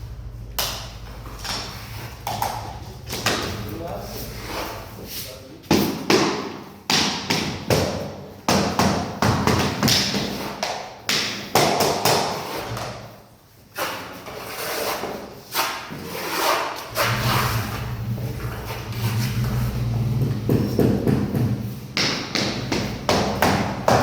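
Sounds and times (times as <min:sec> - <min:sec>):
knocking thuds on flooring: 0:20.0 - 0:24.0.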